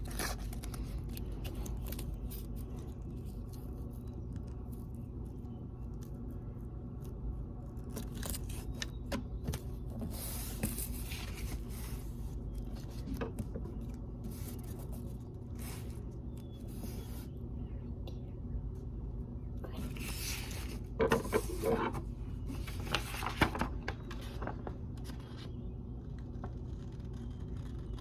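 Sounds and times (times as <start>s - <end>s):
paper rustling: 0.0s - 4.8s, 7.8s - 17.3s, 19.7s - 25.5s
low steady hum: 0.0s - 28.0s.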